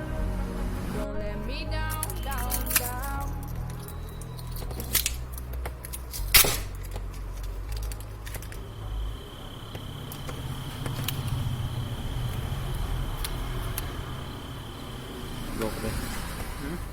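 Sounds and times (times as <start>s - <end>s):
faint high whine: 0.0s - 16.9s
low hum: 0.0s - 16.9s
clicks and snaps of plastic parts: 1.9s - 8.6s.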